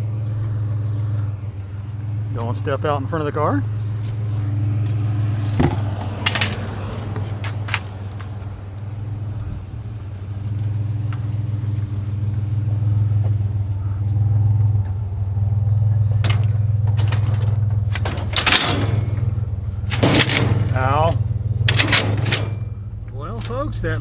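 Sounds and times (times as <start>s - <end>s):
truck engine idling: 0.0s - 24.0s
sharp metal clanks: 16.2s - 20.9s, 21.6s - 23.7s.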